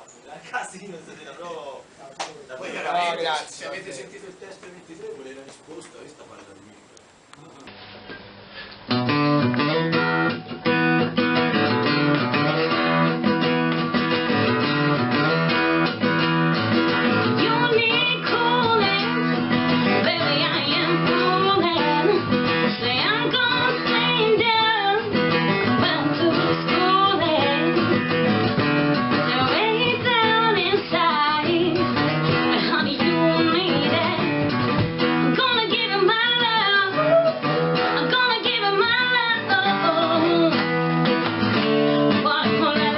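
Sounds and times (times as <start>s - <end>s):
strummed guitar music: 8.8s - 42.9s
person singing: 25.7s - 28.0s, 35.4s - 40.6s.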